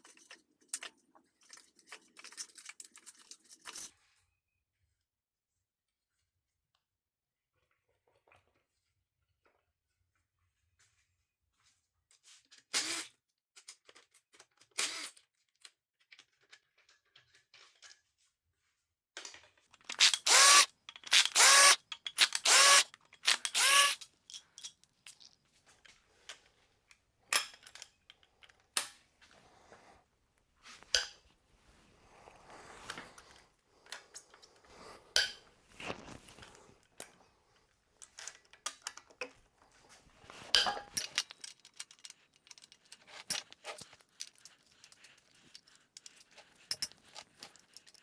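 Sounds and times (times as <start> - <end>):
handheld power tool running: 19.9 - 24.0.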